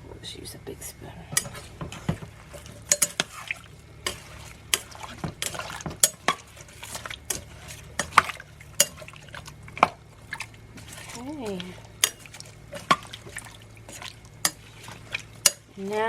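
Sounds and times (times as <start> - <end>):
spoon clinking against pot: 2.9 - 3.3, 8.8 - 9.1, 15.4 - 15.7.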